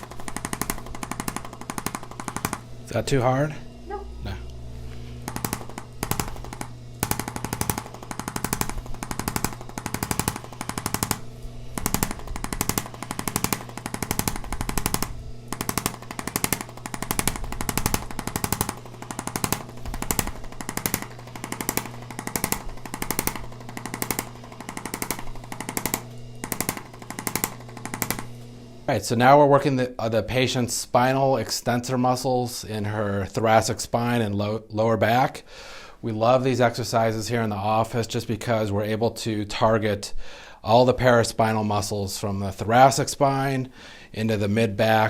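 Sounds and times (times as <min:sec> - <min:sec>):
massage tool knocking rapidly: 0:00.0 - 0:03.0, 0:05.2 - 0:28.4
steady motor hum: 0:00.0 - 0:30.0.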